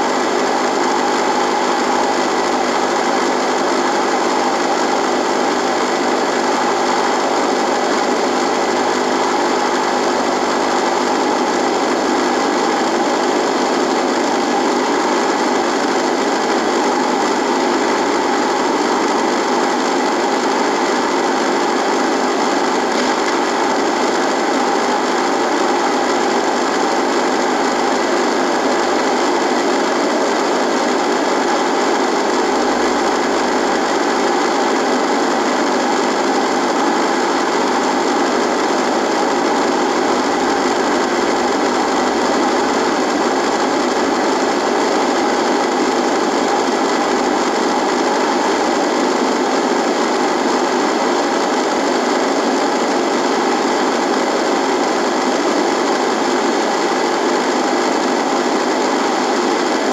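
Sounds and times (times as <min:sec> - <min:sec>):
radio static buzz: 0:00.0 - 0:59.9.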